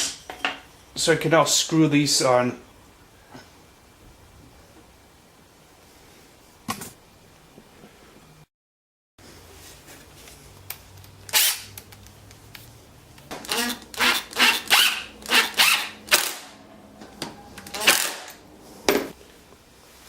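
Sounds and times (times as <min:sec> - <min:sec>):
screws grinding into plywood: 0:13.4 - 0:16.4.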